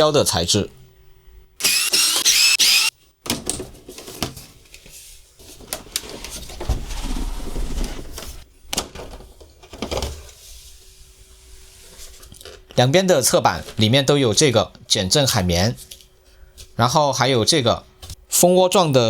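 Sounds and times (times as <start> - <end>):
high-pitched whir: 1.6 - 2.9
plastic rubbing and scraping: 5.4 - 8.5.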